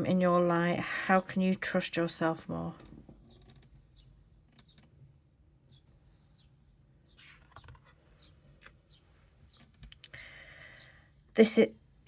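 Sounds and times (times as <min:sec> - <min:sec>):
cards clicking and rustling: 0:07.2 - 0:08.0.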